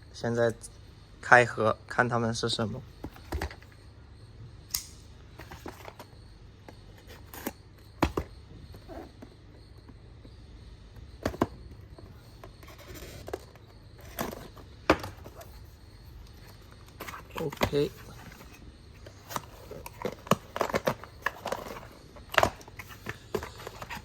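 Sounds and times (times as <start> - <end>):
parcel scraping: 16.3 - 24.0.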